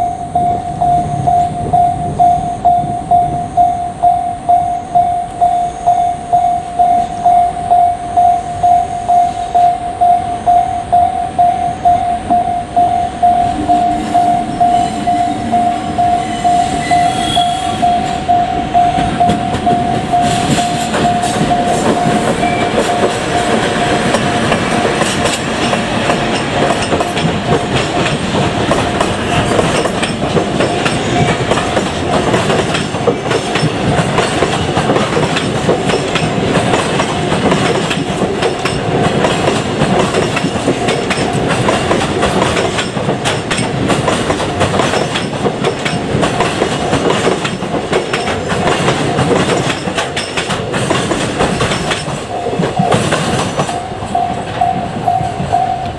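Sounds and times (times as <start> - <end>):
level crossing bell dinging: 0.0 - 24.2
freight train rumbling past: 0.0 - 55.9
train wheels clattering on rails: 0.0 - 55.9.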